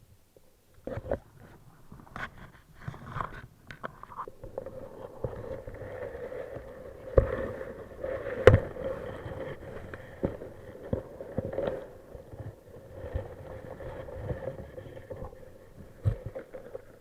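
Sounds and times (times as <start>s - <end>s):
water noise: 0.3s - 17.0s.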